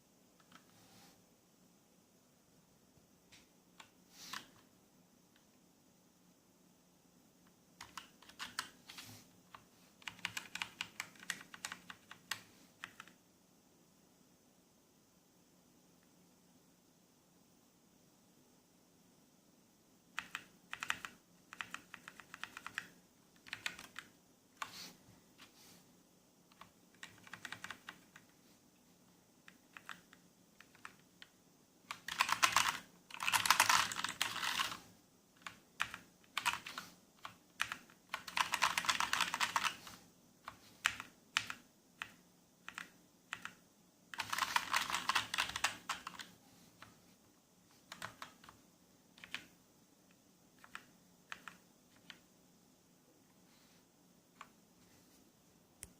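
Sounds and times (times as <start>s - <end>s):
typing on mechanical keyboard: 7.8s - 8.8s, 9.5s - 13.2s, 20.2s - 24.7s, 26.5s - 28.3s, 29.5s - 31.3s, 31.9s - 34.8s, 35.4s - 39.9s, 40.5s - 46.9s, 47.8s - 48.6s, 49.2s - 49.5s, 50.6s - 52.2s.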